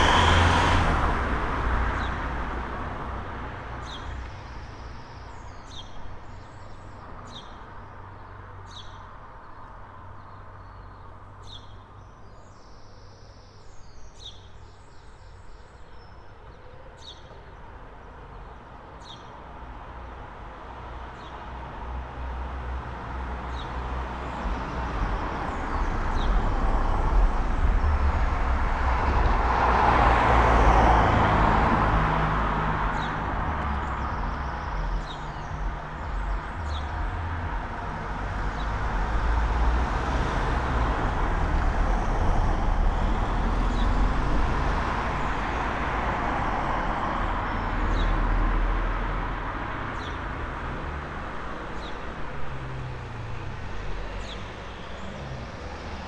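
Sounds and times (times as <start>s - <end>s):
low traffic rumble: 0.0s - 56.0s
vehicles passing: 0.0s - 56.0s.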